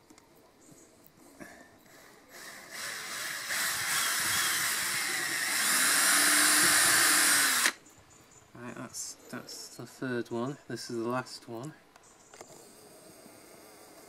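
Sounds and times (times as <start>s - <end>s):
power drill boring through wall: 2.3s - 7.8s.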